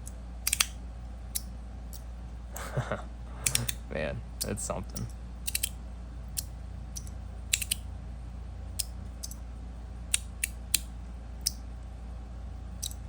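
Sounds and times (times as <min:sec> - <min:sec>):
magnetic slider metal clicks: 0:00.4 - 0:00.8, 0:04.4 - 0:05.8, 0:06.4 - 0:07.8.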